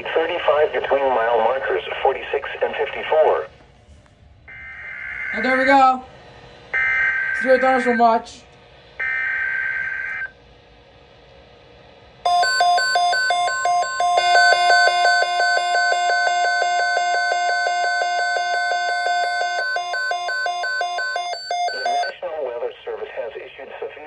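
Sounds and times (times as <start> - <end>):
pulsing electronic alarm beep: 6.8 - 7.5, 12.3 - 22.2
shrill warbling data tone: 12.3 - 22.1
steady alert tone: 12.3 - 22.1.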